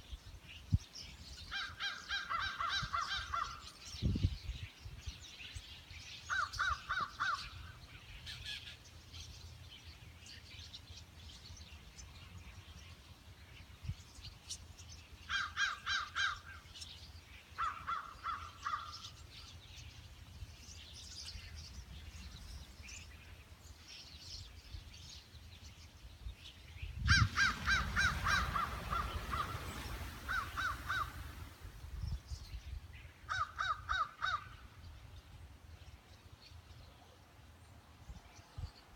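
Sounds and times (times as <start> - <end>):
harsh rapid bird calls: 26.9 - 31.5.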